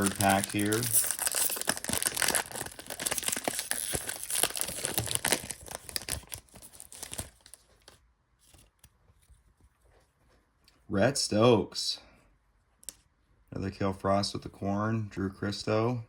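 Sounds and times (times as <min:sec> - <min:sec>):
wrapper crinkling and tearing: 0:00.0 - 0:08.9.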